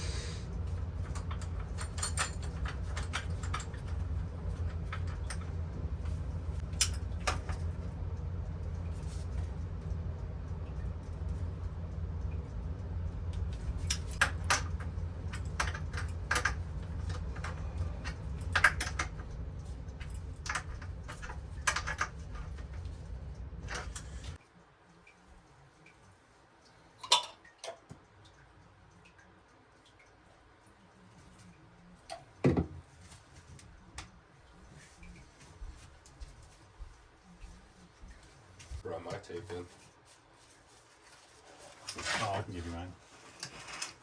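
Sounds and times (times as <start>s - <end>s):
steady low hum: 0.0s - 26.5s
tools and parts clinking: 0.7s - 7.8s, 13.5s - 23.0s.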